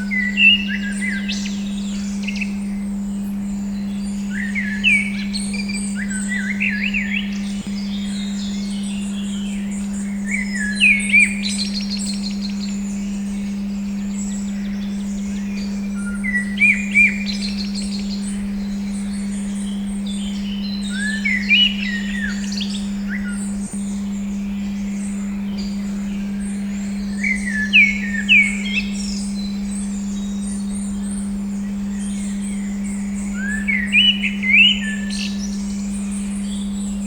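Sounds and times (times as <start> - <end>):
songbirds chirping: 0.0 - 37.0
steady pure tone: 0.0 - 37.0
short slurred bird calls: 14.2 - 37.0.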